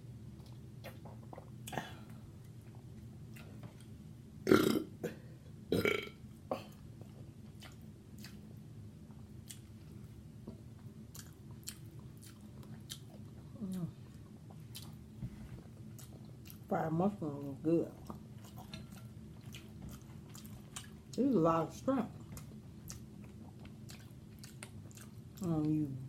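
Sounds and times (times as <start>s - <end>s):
woman burping loudly: 4.5s - 6.2s
wet chewing clicks: 11.1s - 15.0s, 22.2s - 25.7s.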